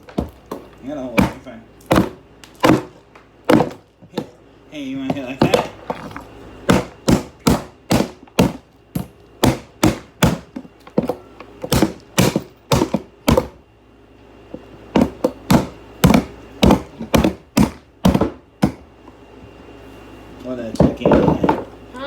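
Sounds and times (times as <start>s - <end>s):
hammer striking hair dryer: 6.7s - 10.5s, 11.6s - 13.6s.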